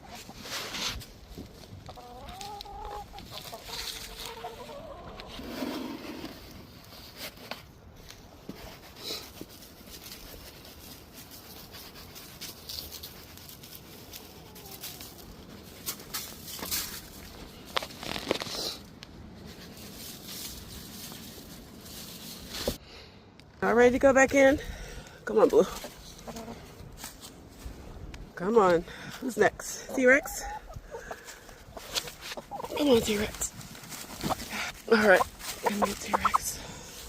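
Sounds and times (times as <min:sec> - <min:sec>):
chickens tapping and rustling: 0:00.0 - 0:05.4, 0:08.4 - 0:18.5, 0:30.0 - 0:37.0
faint chicken calls: 0:01.9 - 0:06.0, 0:14.1 - 0:15.3.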